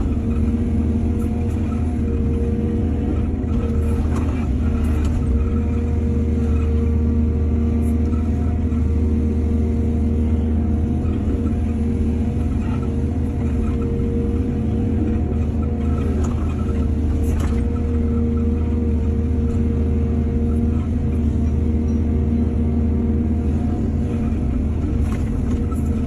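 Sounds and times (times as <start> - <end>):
diesel machinery rumbling: 0.0 - 26.0.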